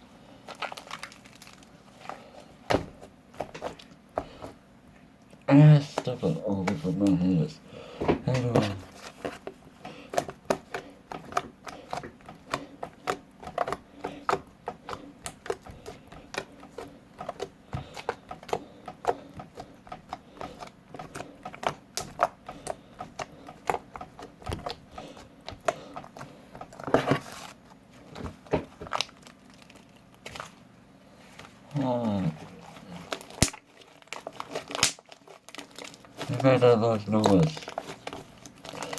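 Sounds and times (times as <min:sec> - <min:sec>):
slime clicking and popping: 0:21.0 - 0:24.8, 0:34.2 - 0:35.2.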